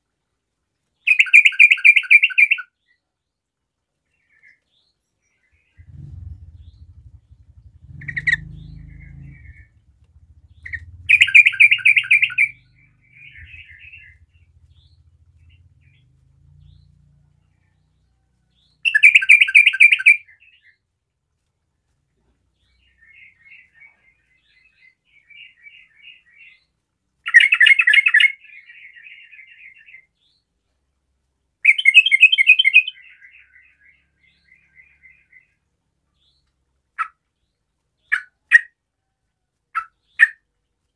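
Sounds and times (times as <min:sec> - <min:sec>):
bird singing bubbly phrases: 0:05.5 - 0:16.0, 0:18.8 - 0:20.7, 0:27.2 - 0:30.0
soft bird chattering: 0:05.8 - 0:15.6.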